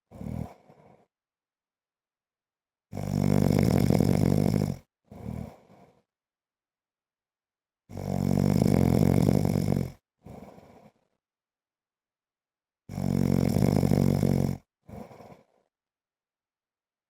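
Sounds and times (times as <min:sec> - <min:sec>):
faint breath: 0:00.1 - 0:01.1, 0:05.2 - 0:06.1, 0:10.3 - 0:11.2, 0:14.9 - 0:15.7
man snoring: 0:00.1 - 0:01.1, 0:02.9 - 0:06.0, 0:07.9 - 0:11.0, 0:12.9 - 0:15.5.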